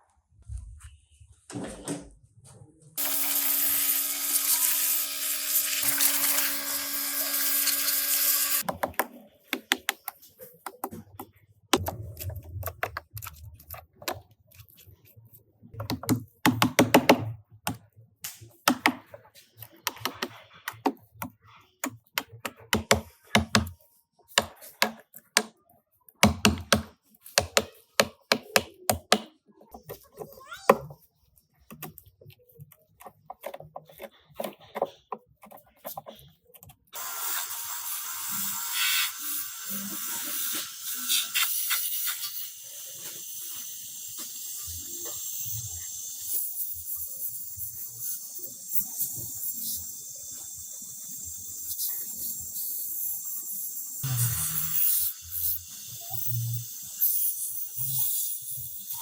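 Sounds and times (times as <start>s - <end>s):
power tool running: 3.0s - 8.6s, 54.0s - 56.4s
tools clicking and knocking: 15.8s - 17.9s, 18.6s - 30.0s.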